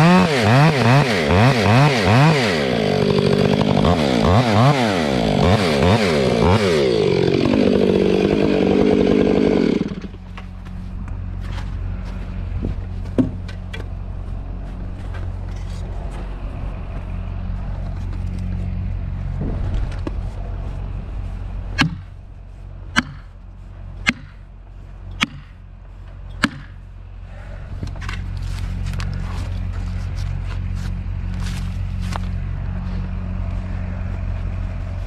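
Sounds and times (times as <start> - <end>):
sharp knocks: 21.8 - 22.1, 23.0 - 23.3, 24.0 - 24.4, 25.2 - 25.6, 26.4 - 26.8.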